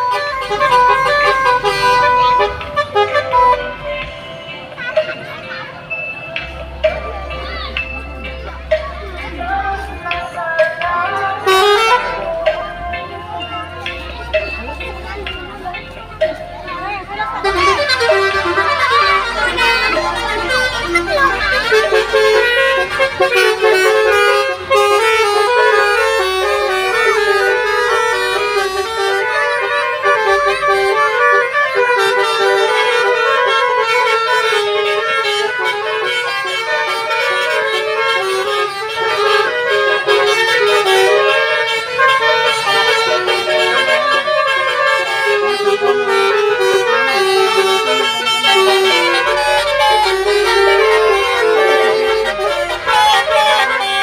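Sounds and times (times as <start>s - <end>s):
multi-tone horn playing a tune: 0.0s - 6.1s, 8.7s - 54.0s.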